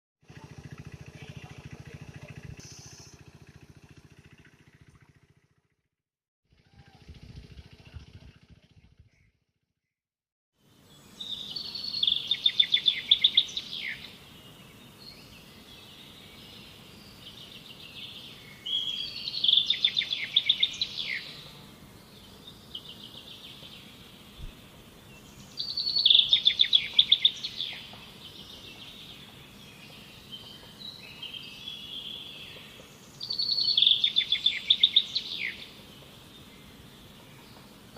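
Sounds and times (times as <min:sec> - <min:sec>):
steady outdoor hiss: 0:00.2 - 0:05.2, 0:10.6 - 0:37.9
songbird trilling: 0:11.1 - 0:14.2, 0:17.5 - 0:21.5, 0:25.4 - 0:37.8.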